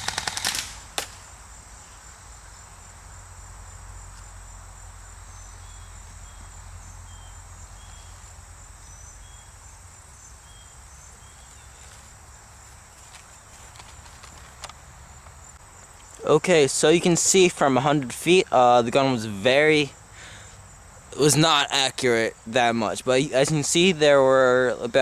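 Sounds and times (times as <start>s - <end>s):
short insect chirps: 0.0s - 16.3s
insects chirring: 0.0s - 25.0s.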